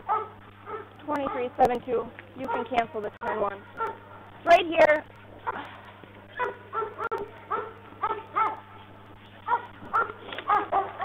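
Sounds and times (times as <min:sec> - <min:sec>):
dog barking: 0:00.0 - 0:01.6, 0:02.4 - 0:04.2, 0:05.4 - 0:05.7, 0:06.3 - 0:08.7, 0:09.4 - 0:11.0.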